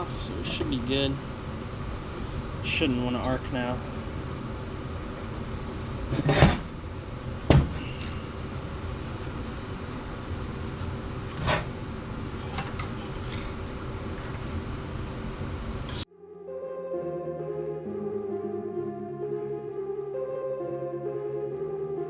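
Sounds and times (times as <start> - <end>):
steady shop hum: 0.0 - 16.1
music: 16.1 - 22.0.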